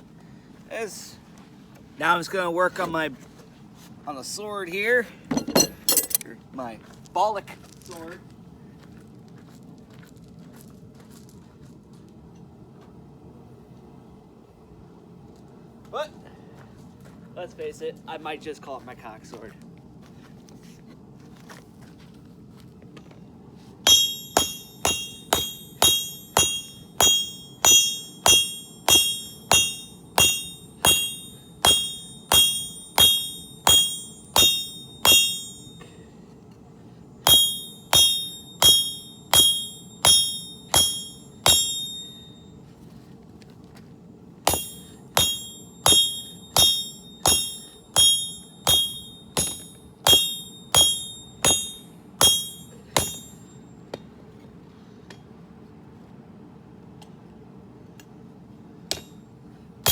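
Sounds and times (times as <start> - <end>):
hammer ringing on metal anvil: 5.3 - 6.2, 23.9 - 36.0, 37.3 - 42.4, 44.5 - 53.6, 58.9 - 59.2.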